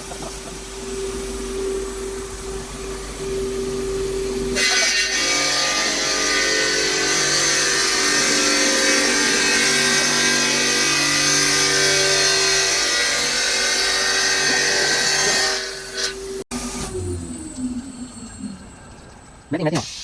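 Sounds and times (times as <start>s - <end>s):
saw blade cutting stone: 4.6s - 16.3s.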